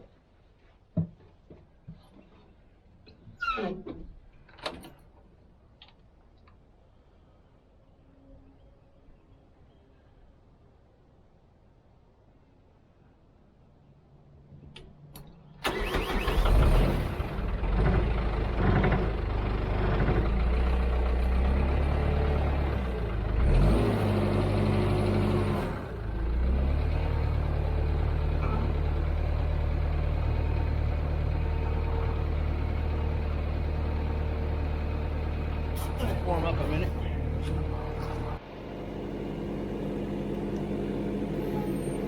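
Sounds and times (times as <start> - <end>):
diesel engine starting and idling: 15.6 - 42.0.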